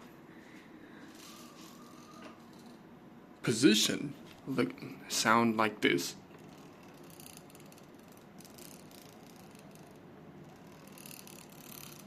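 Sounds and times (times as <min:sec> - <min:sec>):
camera slider grinding on rail: 0:06.4 - 0:12.0.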